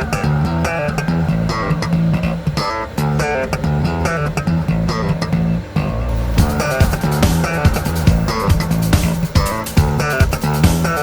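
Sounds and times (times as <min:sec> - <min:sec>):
bass and plucked guitar music: 0:00.0 - 0:11.0.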